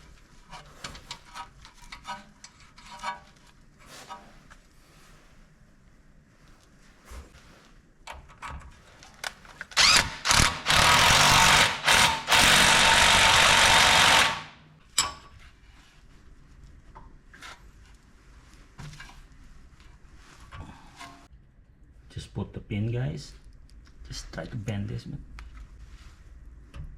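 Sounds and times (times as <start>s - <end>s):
power tool bursts: 9.8s - 14.6s.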